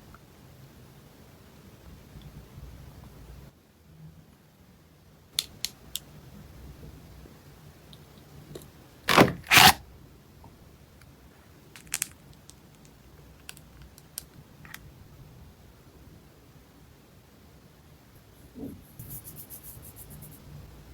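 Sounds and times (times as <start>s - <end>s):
packaging crinkling bursts: 9.1s - 9.8s, 11.7s - 14.8s.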